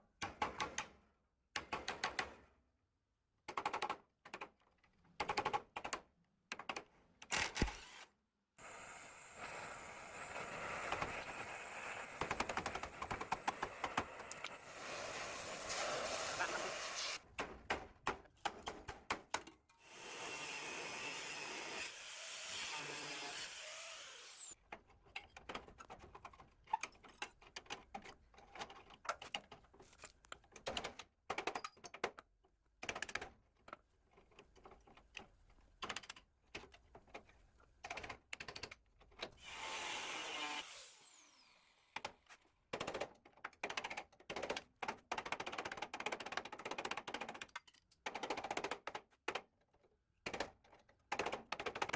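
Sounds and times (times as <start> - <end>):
small power tool whining: 19.8 - 24.6, 39.4 - 42.0.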